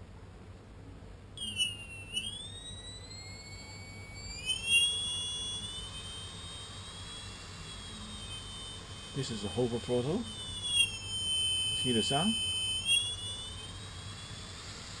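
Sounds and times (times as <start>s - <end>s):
drone motor whining: 1.4s - 15.0s.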